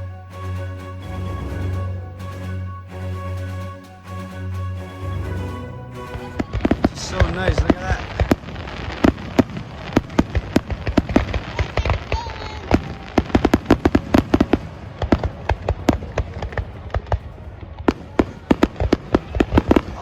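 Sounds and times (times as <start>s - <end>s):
fireworks bangs and crackles: 6.1s - 20.0s.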